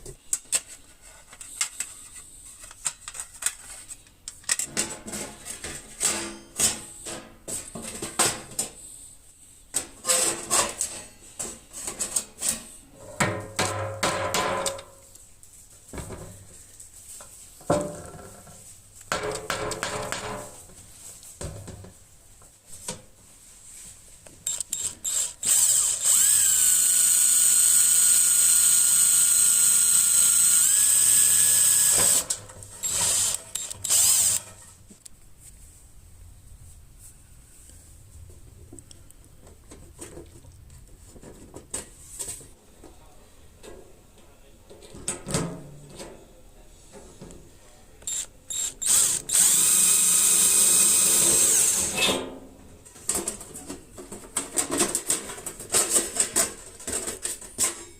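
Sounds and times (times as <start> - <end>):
tools and parts clicking: 2.6 - 6.8, 24.4 - 28.0, 28.6 - 34.7
electric drill running: 24.5 - 34.4, 48.1 - 51.9.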